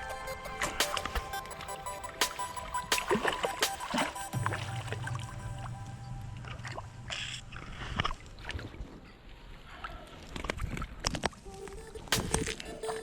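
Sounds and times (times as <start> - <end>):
low hum: 0.0 - 9.4
water sloshing and splashing: 0.0 - 13.0.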